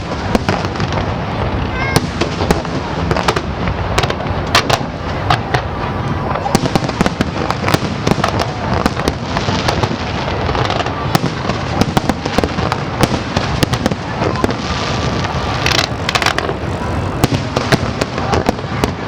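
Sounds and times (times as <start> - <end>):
fireworks crackling bangs: 0.0 - 19.0
low rumble of bursts: 10.1 - 19.0
rush of hiss: 14.0 - 18.2.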